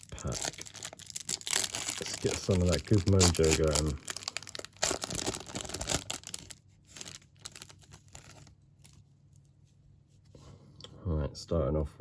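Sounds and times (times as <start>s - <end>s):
card pack wrapper tearing: 0.0s - 9.0s
cards rustling and clicking: 1.6s - 9.0s.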